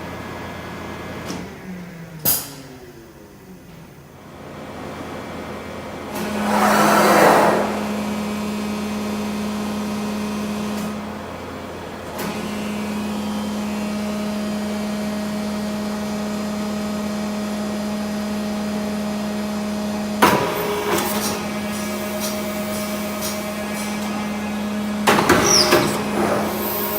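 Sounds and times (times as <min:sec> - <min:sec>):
hydraulic machine humming: 0:06.1 - 0:11.0, 0:20.2 - 0:26.9.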